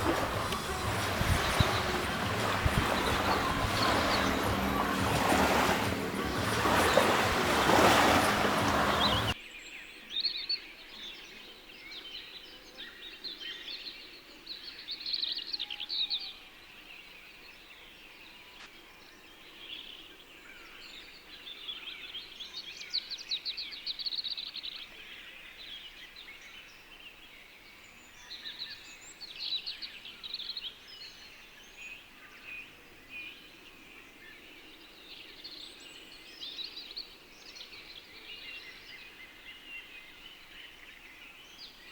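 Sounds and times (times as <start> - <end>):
loud rushing noise: 0.0 - 9.4
birds singing and chirping: 0.0 - 9.9.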